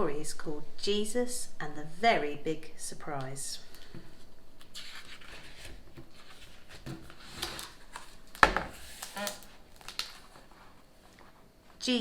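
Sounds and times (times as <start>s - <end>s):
soft rustling and handling: 3.7s - 11.8s.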